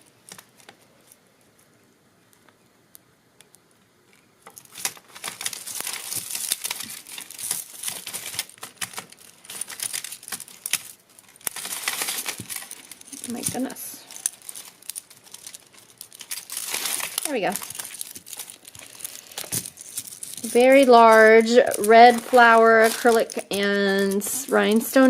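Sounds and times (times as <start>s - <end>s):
jewelry crinkling and rustling: 0.0s - 2.6s, 3.5s - 25.0s
clicks of beads and chain: 5.5s - 25.0s.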